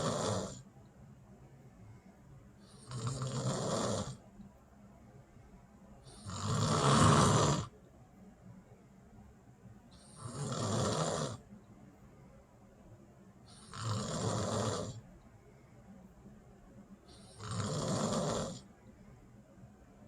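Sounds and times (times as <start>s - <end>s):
person snoring: 0.0s - 0.6s, 2.7s - 4.2s, 6.1s - 7.7s, 10.0s - 11.4s, 13.5s - 15.0s, 17.1s - 18.6s.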